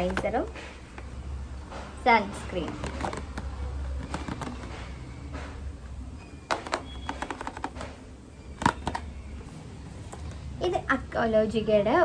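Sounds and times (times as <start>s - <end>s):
steady low hum: 0.0s - 12.0s
packaging clicks and taps: 2.6s - 5.6s, 6.4s - 9.1s.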